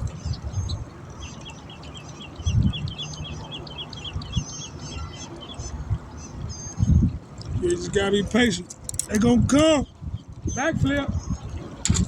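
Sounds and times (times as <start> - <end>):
bird trilling: 0.5 - 7.0.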